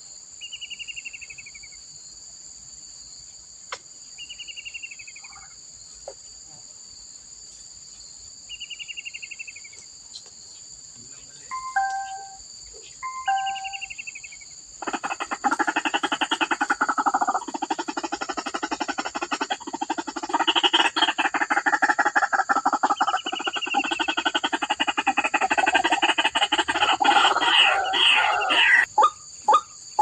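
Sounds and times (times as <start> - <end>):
crickets chirring: 0.0 - 30.0
bird falling trill: 11.5 - 12.4, 13.0 - 13.9
waterhens rapid pulsing calls: 14.8 - 29.6.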